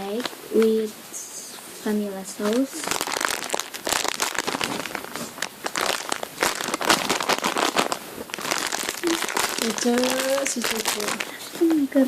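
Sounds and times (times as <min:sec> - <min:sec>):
plastic wrapper crinkling: 0:02.4 - 0:11.9.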